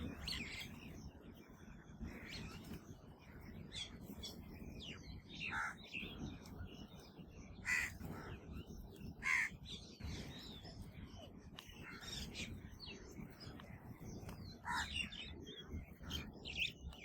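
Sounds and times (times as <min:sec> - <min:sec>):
birds chirping: 0:00.0 - 0:17.0
crows cawing: 0:05.4 - 0:05.8, 0:07.6 - 0:08.4, 0:09.2 - 0:09.6, 0:14.6 - 0:15.0.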